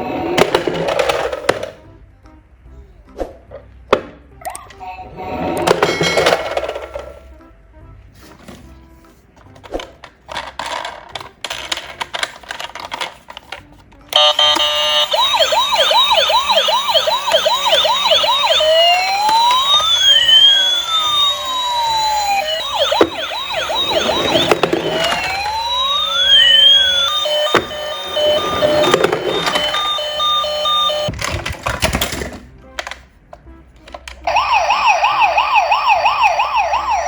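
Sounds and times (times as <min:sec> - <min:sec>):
toy electronic sirens: 0:00.0 - 0:01.7, 0:04.4 - 0:07.2, 0:14.1 - 0:31.1, 0:34.1 - 0:37.0.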